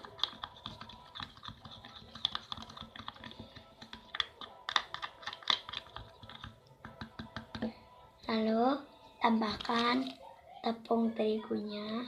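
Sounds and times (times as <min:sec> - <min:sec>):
utensil scraping container while stirring: 0:00.0 - 0:06.6.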